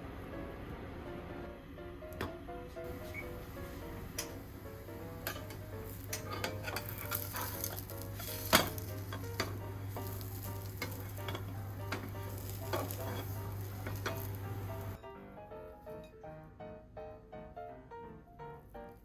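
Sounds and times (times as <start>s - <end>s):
microwave oven humming: 0.0s - 15.0s
food crackling and popping: 2.9s - 15.0s.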